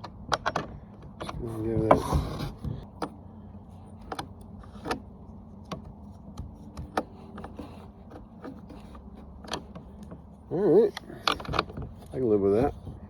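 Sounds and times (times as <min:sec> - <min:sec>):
light clicks and knocks: 0:00.0 - 0:13.0
low steady hum: 0:00.0 - 0:13.0.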